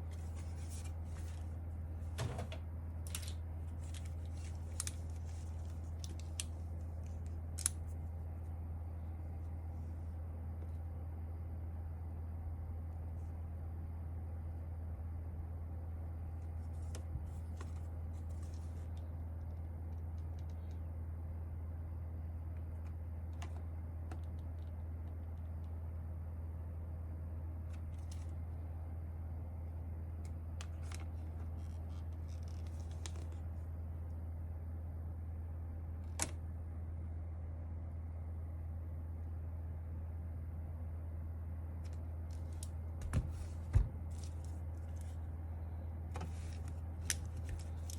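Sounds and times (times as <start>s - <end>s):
steady low hum: 0.0s - 47.9s.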